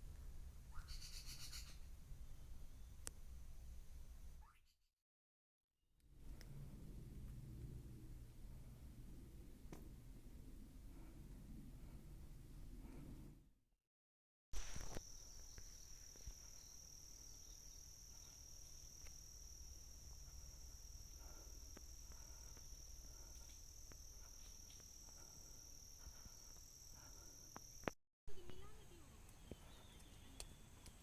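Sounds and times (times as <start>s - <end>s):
forest insects droning: 14.6s - 28.0s.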